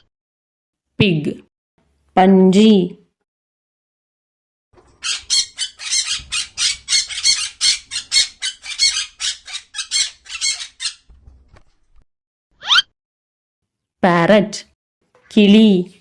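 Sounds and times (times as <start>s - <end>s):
pig squealing: 5.0s - 11.1s.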